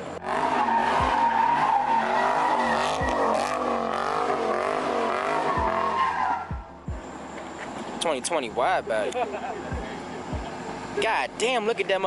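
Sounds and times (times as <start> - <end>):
car engine revving hard: 0.0 - 7.2
tyres squealing: 0.0 - 9.1.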